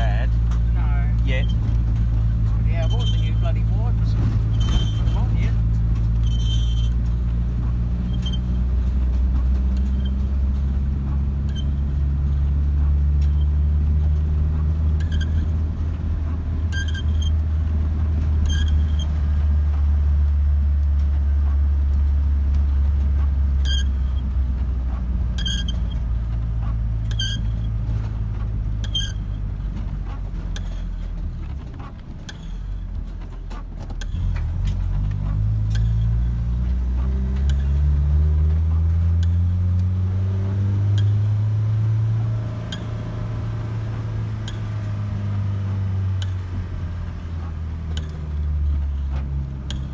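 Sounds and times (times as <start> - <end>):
car road and engine rumble: 0.0 - 49.9
short high squeak: 2.7 - 3.8, 4.4 - 7.1, 8.0 - 8.7, 9.8 - 10.3, 11.4 - 12.1, 15.0 - 15.6, 16.7 - 17.4, 18.4 - 19.4, 23.6 - 24.3, 25.4 - 26.0, 27.1 - 27.8, 28.8 - 29.5.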